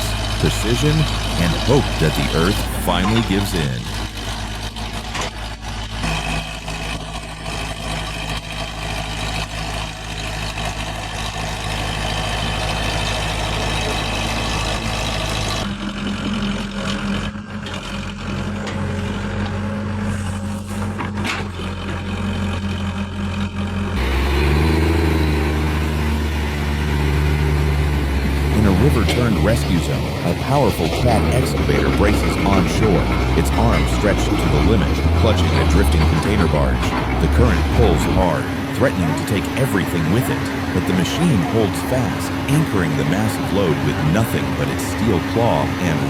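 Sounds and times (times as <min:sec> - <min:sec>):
excavator diesel engines running: 0:00.0 - 0:46.0.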